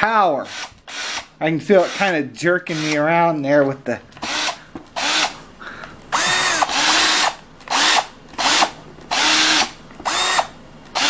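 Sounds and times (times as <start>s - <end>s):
cordless drill spinning: 0.5s - 3.0s, 4.2s - 5.4s, 6.1s - 11.0s.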